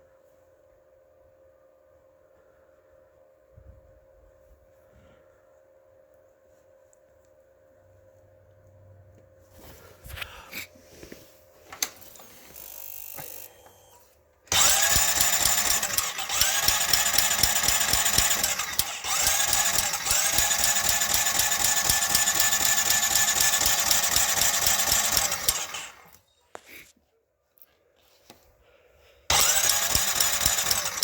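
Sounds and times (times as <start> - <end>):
atv engine with rattling tick: 14.5 - 26.2, 29.3 - 31.0.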